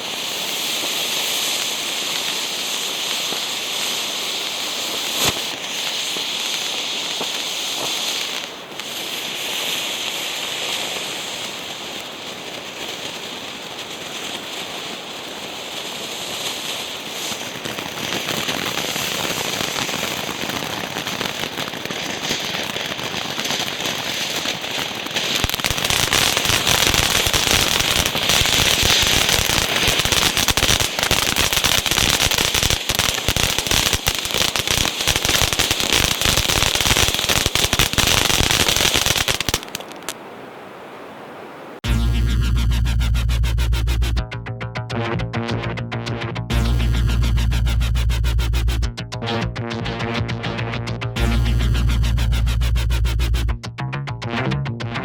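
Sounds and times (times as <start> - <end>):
firework fountain hissing: 0.0 - 41.8
firework crackling: 0.0 - 44.3, 46.4 - 49.0, 50.8 - 53.6
firework pop: 5.2 - 5.6, 39.4 - 40.2.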